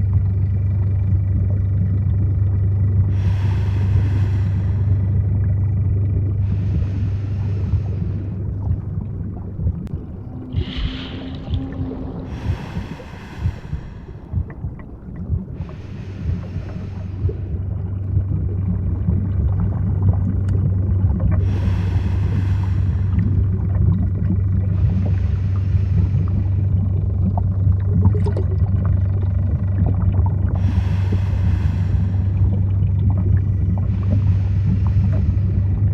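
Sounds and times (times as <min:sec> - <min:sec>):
deep underwater rumble: 0:00.0 - 0:35.9
scuba regulator breathing hiss: 0:30.6 - 0:32.4.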